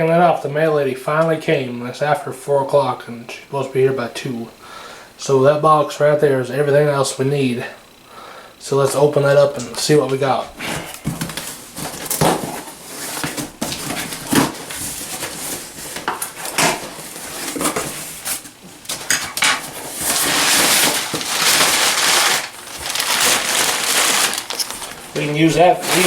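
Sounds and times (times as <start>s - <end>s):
packaging rustling: 10.5s - 26.0s.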